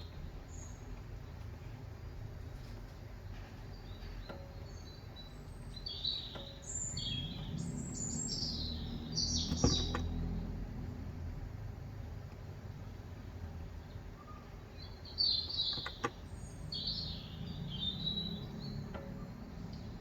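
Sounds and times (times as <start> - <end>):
small birds chirping: 0.0 - 2.6, 3.5 - 10.5, 12.8 - 20.0
sharp clicks: 15.5 - 16.3.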